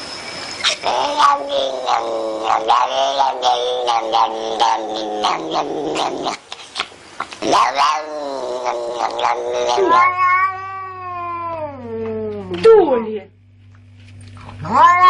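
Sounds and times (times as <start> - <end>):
cat yowling: 0.6 - 6.4, 7.4 - 12.6, 14.6 - 15.0.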